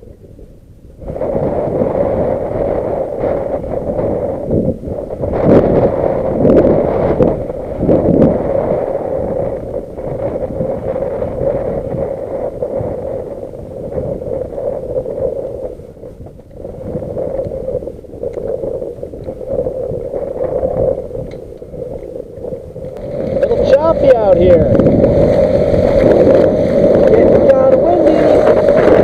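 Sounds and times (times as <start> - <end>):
wind buffeting microphone: 0.0 - 29.0
water lapping against kayak: 0.2 - 29.0.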